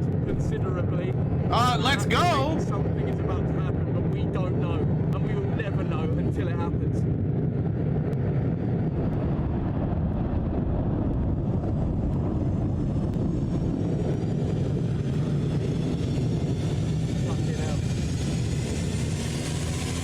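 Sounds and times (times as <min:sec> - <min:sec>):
volcano crater deep roar: 0:02.5 - 0:15.7.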